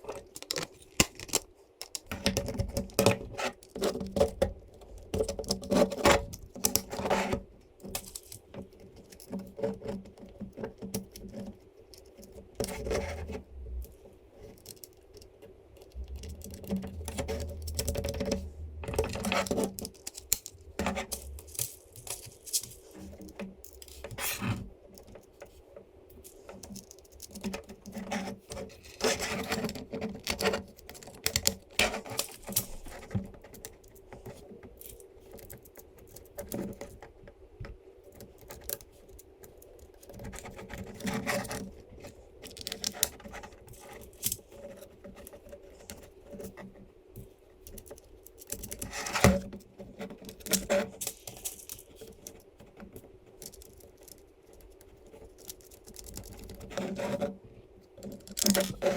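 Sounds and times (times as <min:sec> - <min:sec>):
faint steady hum: 0:00.0 - 0:58.9
small parts clicking and clattering: 0:13.8 - 0:37.2, 0:47.2 - 0:57.2.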